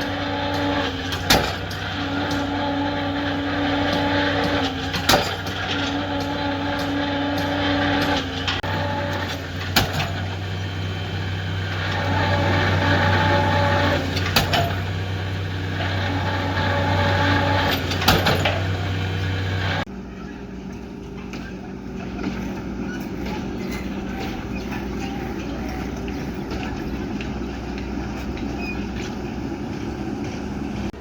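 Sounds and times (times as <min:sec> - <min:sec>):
sharp metallic knocks: 0:00.0 - 0:10.5, 0:11.8 - 0:19.0
excavator diesel engine running: 0:00.0 - 0:31.0.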